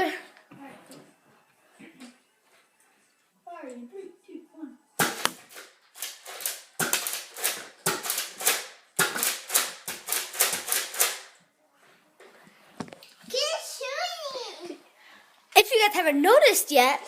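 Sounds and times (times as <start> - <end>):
toy dart blaster firing clicks: 5.0 - 11.3.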